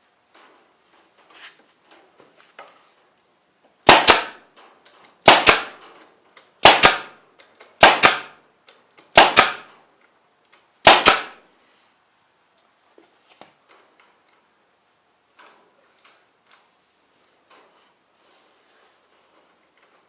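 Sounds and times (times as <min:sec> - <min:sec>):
staple gun firing: 0:03.9 - 0:04.4, 0:05.2 - 0:05.8, 0:06.6 - 0:08.4, 0:09.0 - 0:09.7, 0:10.8 - 0:11.4.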